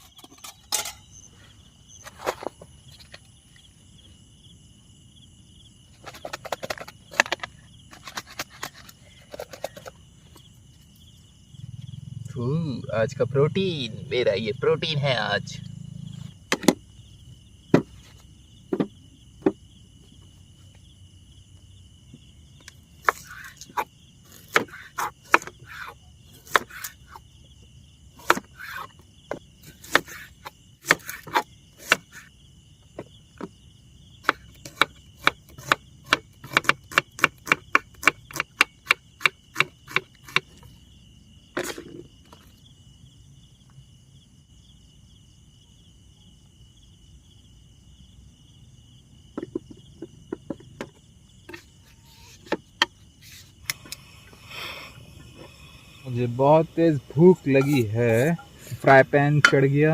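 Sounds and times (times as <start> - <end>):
knife chopping on wooden board: 23.0 - 26.9, 28.2 - 32.2, 34.2 - 40.6.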